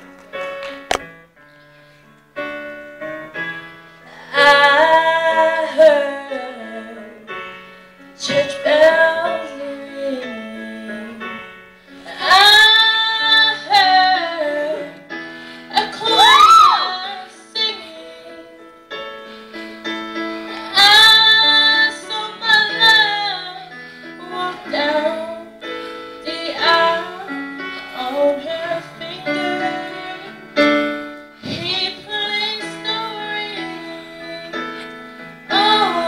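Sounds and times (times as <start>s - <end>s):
piano chords: 0.0s - 36.0s
girl singing: 20.6s - 25.6s, 26.2s - 30.9s, 31.5s - 34.8s, 35.5s - 36.0s.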